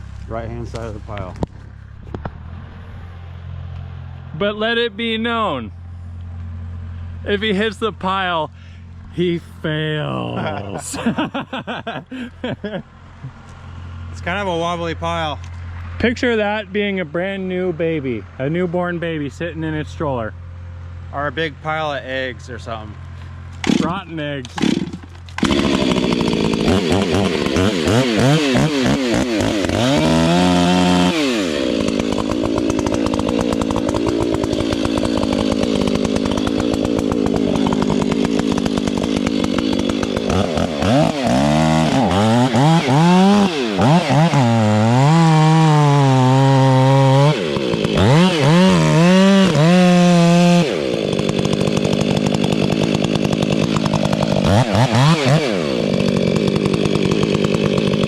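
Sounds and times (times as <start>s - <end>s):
chainsaw cutting wood: 10.1s - 14.1s, 23.0s - 58.0s.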